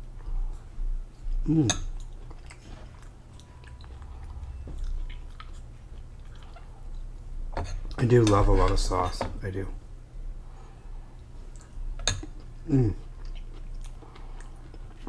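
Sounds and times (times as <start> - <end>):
chewing with wet mouth clicks: 0.0 - 7.4, 11.2 - 15.0.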